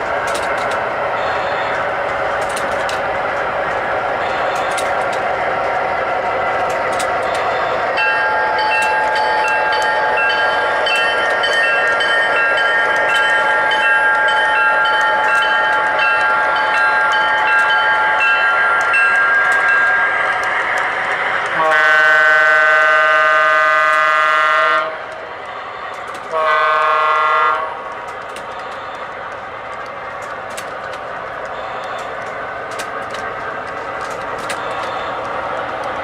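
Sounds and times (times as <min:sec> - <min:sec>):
model train rolling on track: 0:00.0 - 0:36.0
model train horn chord: 0:21.6 - 0:25.0, 0:26.3 - 0:27.8.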